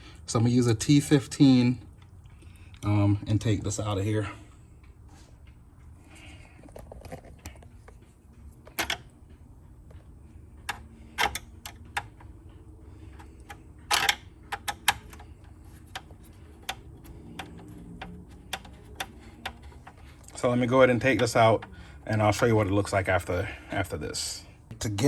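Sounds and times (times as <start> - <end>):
screwdriver clicks and knocks: 13.1 - 20.1.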